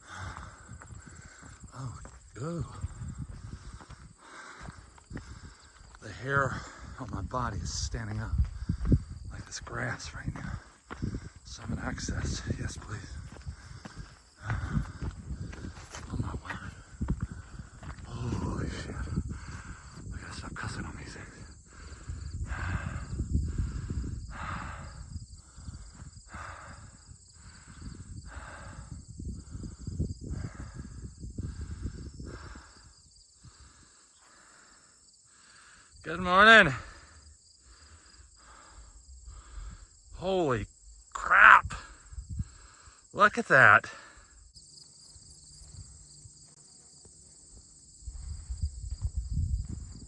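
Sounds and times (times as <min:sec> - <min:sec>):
wind buffeting microphone: 0:00.0 - 0:34.0, 0:41.7 - 0:42.8, 0:47.3 - 0:50.0
insects chirping: 0:00.0 - 0:50.0.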